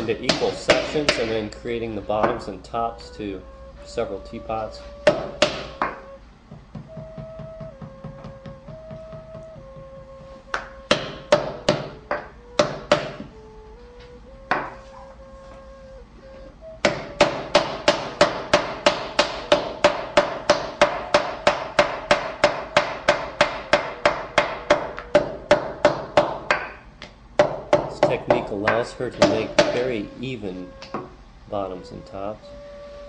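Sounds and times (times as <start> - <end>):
wooden mallet beating clay: 0.0 - 2.6, 5.0 - 13.4, 14.5 - 15.0, 16.8 - 30.2, 30.8 - 31.2
faint background music: 0.0 - 33.0.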